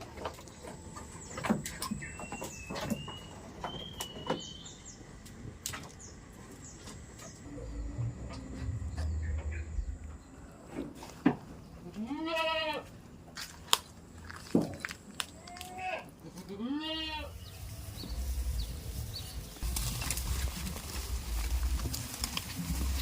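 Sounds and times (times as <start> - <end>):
goat bleating: 11.8 - 12.9, 15.4 - 17.4.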